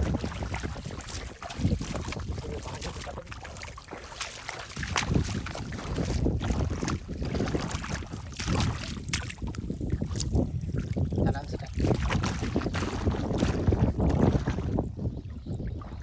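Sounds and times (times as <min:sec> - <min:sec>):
water surging: 0:00.0 - 0:09.5
wind rumbling on microphone: 0:00.0 - 0:16.0.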